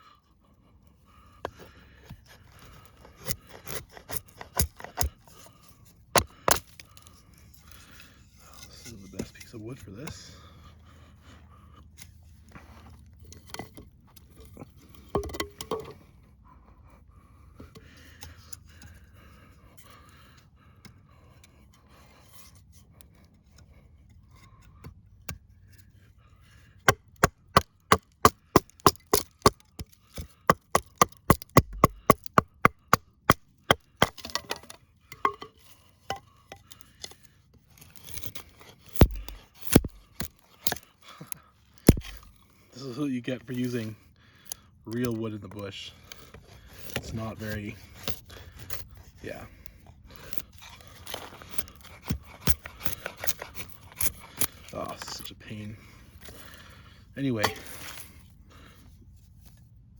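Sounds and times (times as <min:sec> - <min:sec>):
knife chopping into wood: 0:03.1 - 0:05.2, 0:06.2 - 0:06.7, 0:26.9 - 0:36.2, 0:38.9 - 0:40.8, 0:41.8 - 0:42.4, 0:51.1 - 0:54.6, 0:57.4 - 0:58.0
handling knocks and rustling: 0:37.7 - 0:40.8, 0:41.8 - 0:42.4, 0:57.4 - 0:58.2.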